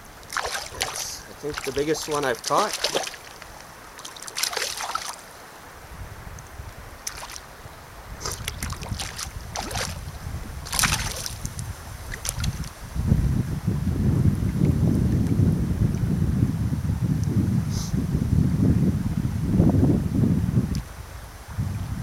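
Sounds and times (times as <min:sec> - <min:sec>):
splashes in water: 0:00.2 - 0:05.3, 0:07.0 - 0:07.5, 0:08.2 - 0:12.8
wind rumble on microphone: 0:05.6 - 0:22.0.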